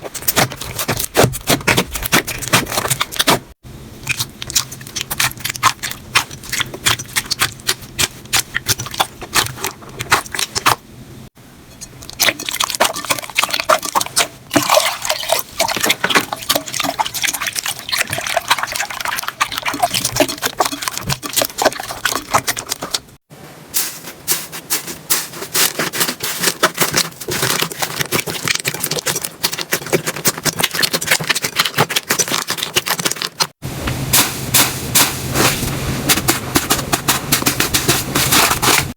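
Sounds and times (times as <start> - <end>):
slime squished by hand: 4.0 - 10.8.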